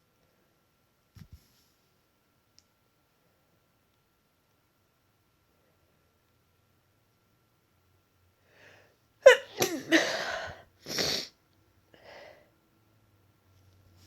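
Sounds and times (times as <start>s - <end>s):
faint breath: 8.4s - 9.0s, 11.9s - 12.6s
woman sneezing: 9.2s - 11.3s.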